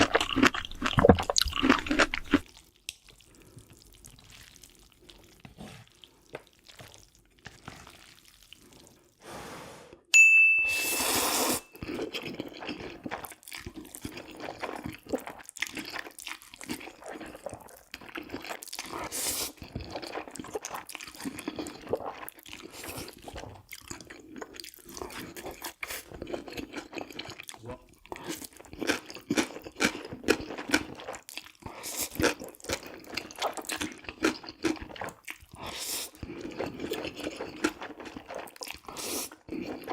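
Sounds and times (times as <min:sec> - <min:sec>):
wet slurps and chewing: 0:00.0 - 0:09.2, 0:11.0 - 0:39.9
short beep: 0:10.2 - 0:11.7.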